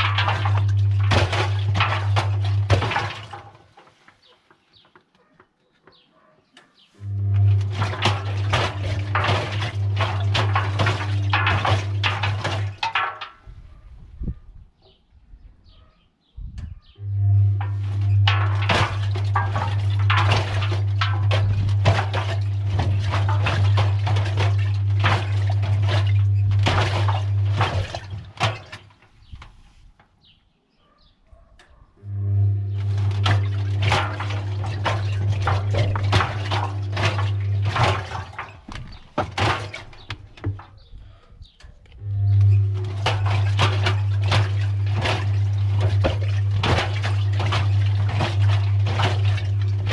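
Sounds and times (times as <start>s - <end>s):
washing machine motor humming: 0.0s - 3.8s, 7.0s - 13.8s, 17.0s - 29.2s, 32.0s - 49.9s
objects clattering in drum: 0.0s - 5.1s, 7.2s - 13.6s, 17.4s - 29.2s, 32.7s - 40.9s, 42.0s - 49.9s
water sloshing: 0.0s - 5.3s, 7.3s - 13.9s, 17.6s - 29.9s, 32.8s - 41.4s, 42.3s - 49.9s.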